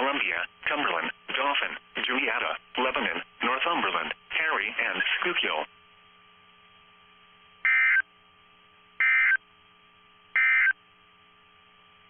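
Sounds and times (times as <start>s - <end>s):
digital data tone bursts: 7.7s - 8.0s, 9.0s - 9.4s, 10.4s - 10.8s.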